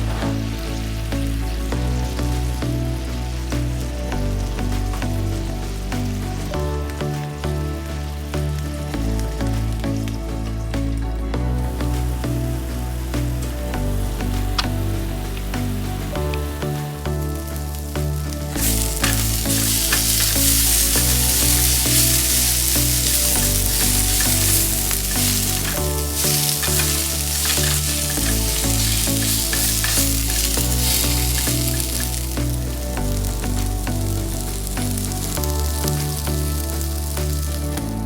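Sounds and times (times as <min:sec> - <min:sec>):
tofu sizzling in a pan: 0:18.6 - 0:32.8.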